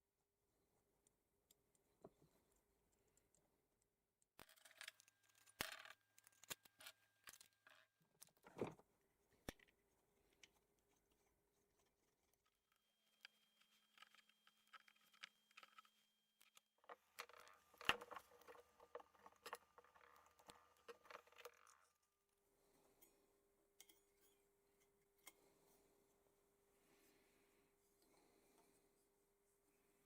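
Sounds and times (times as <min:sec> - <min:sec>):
hands handling cable and metal parts: 0:04.4 - 0:23.2, 0:23.8 - 0:26.1.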